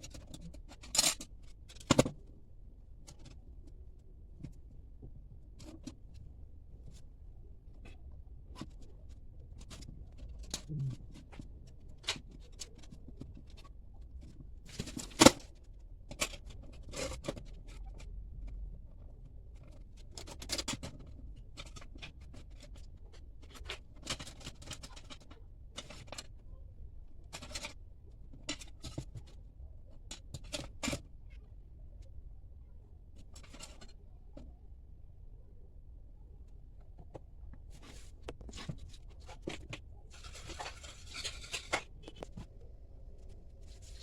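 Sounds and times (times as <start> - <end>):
clicks and scrapes on metal trap: 38.5 - 42.4.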